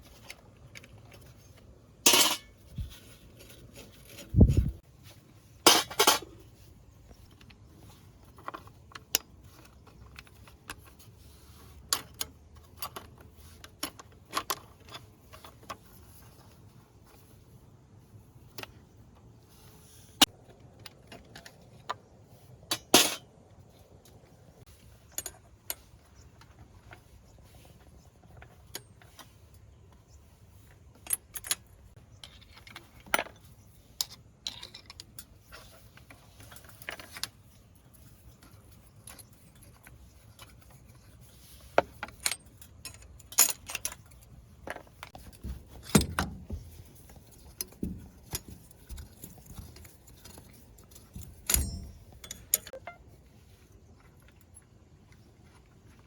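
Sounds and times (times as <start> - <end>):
hand tools clinking on metal: 2.0 - 2.8, 5.6 - 6.5, 22.6 - 23.3, 47.5 - 53.0.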